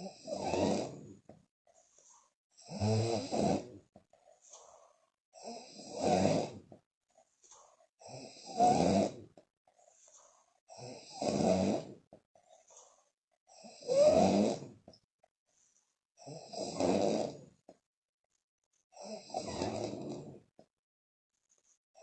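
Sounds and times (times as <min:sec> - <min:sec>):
woman snoring loudly: 0:00.0 - 0:01.2, 0:02.6 - 0:03.8, 0:05.4 - 0:06.7, 0:08.0 - 0:09.4, 0:10.7 - 0:12.1, 0:13.5 - 0:14.8, 0:16.2 - 0:17.5, 0:19.0 - 0:20.5.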